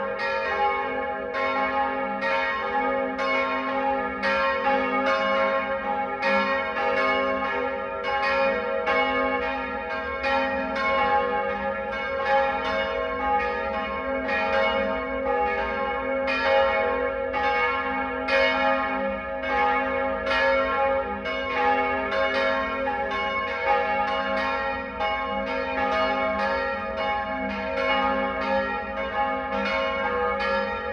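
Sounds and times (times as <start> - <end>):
church bells ringing: 0.0 - 30.9.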